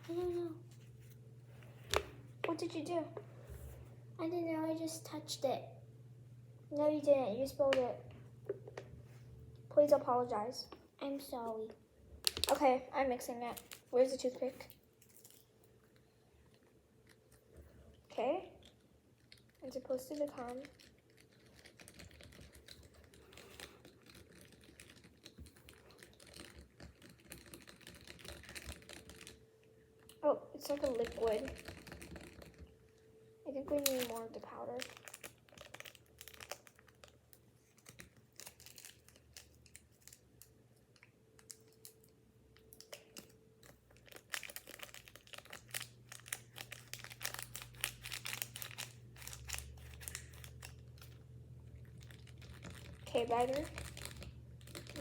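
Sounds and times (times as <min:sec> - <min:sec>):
candy mix stirred in plastic tray: 0:18.2 - 0:29.4, 0:30.5 - 0:32.7, 0:33.5 - 0:40.6, 0:42.7 - 0:55.0.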